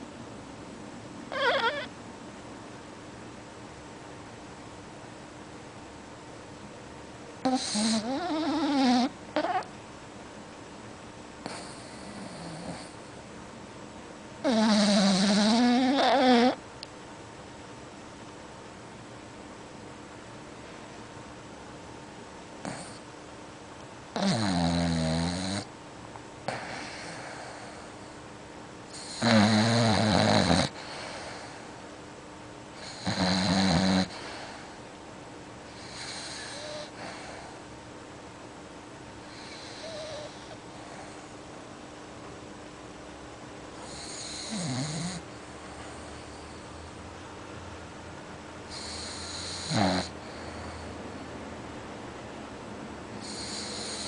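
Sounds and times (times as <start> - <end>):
pet snoring: 1.3 - 1.9, 7.4 - 9.7, 11.4 - 13.0, 14.4 - 16.6, 22.6 - 23.0, 24.1 - 25.7, 26.5 - 27.9, 28.9 - 31.6, 32.8 - 34.7, 35.7 - 37.6, 39.3 - 41.2, 43.8 - 46.5, 48.7 - 50.9, 53.2 - 54.0
faint breath: 26.5 - 28.3, 30.7 - 31.9, 34.1 - 34.9, 35.7 - 37.7, 48.7 - 51.4.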